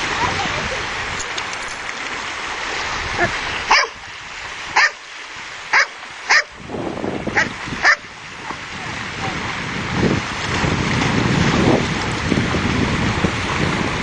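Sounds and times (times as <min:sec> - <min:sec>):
surf: 0:00.0 - 0:14.0
wind noise: 0:00.0 - 0:14.0
dog barking: 0:03.2 - 0:04.0, 0:04.8 - 0:05.0, 0:05.7 - 0:06.6, 0:07.4 - 0:08.1.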